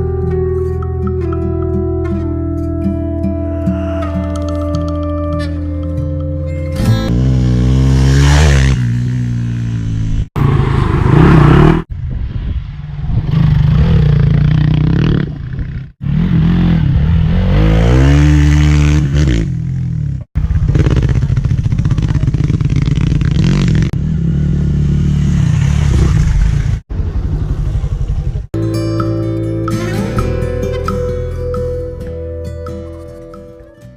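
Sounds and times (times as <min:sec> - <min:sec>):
motorcycle engine revving: 0:06.8 - 0:11.9, 0:12.8 - 0:28.5.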